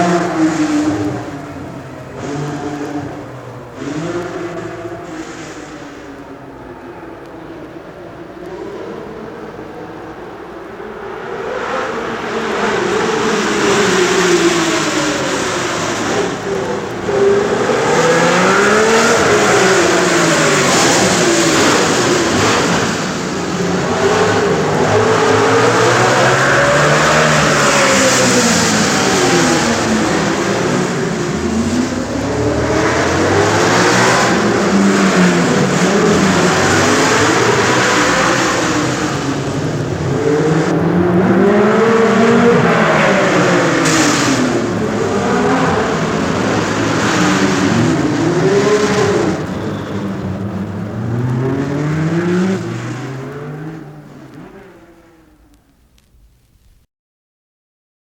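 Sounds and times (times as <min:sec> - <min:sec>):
racing car engines braking and accelerating: 0:00.0 - 0:55.7.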